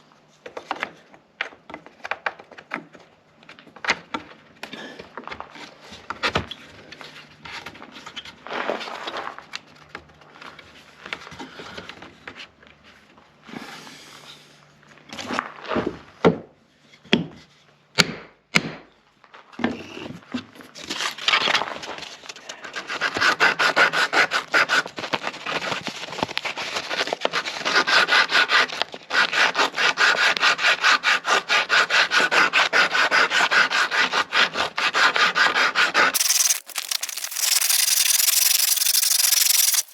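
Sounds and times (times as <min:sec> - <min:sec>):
hand tool scraping wood: 0:29.2 - 0:39.9
quick back-and-forth sawing strokes: 0:35.5 - 0:39.9.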